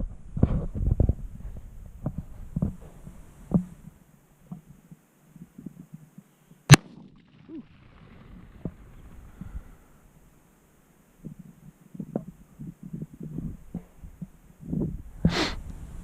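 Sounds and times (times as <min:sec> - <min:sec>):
gunshot: 0:06.7 - 0:07.1.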